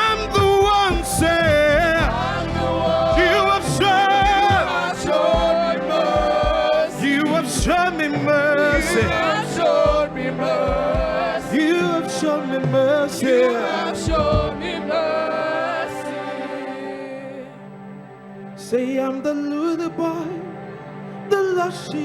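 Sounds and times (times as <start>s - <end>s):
choir singing gospel: 0.0s - 22.0s.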